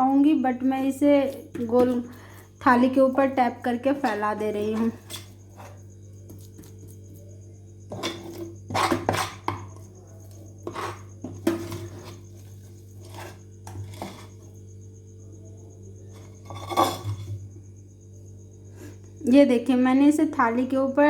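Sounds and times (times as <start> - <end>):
metal utensils scraping a plate: 3.9 - 5.8, 7.9 - 9.7, 10.6 - 14.5, 16.1 - 17.4.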